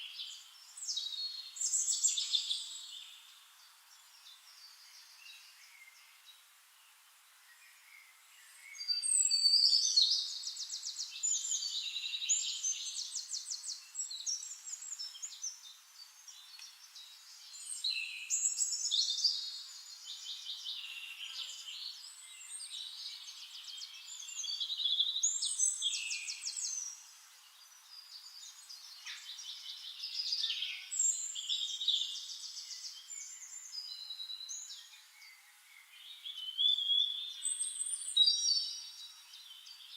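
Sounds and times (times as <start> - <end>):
songbird trilling and chirping: 8.5 - 39.9.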